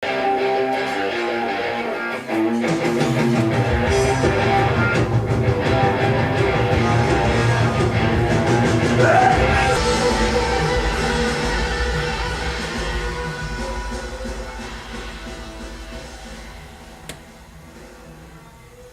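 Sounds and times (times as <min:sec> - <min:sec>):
rock band playing: 0:00.0 - 0:17.9
picked electric guitar line: 0:00.0 - 0:18.5.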